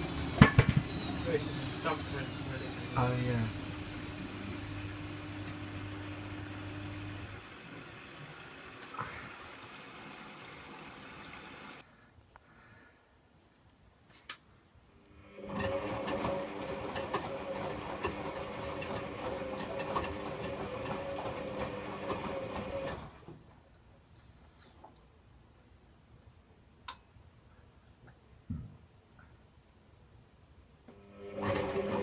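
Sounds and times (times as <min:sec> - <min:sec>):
washing machine drum turning: 0:00.0 - 0:07.2
motor hum: 0:00.0 - 0:11.8.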